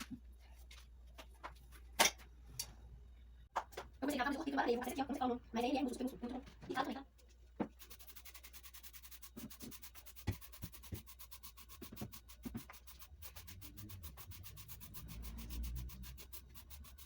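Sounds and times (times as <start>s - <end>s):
sponge scrubbing a surface: 7.7s - 17.0s.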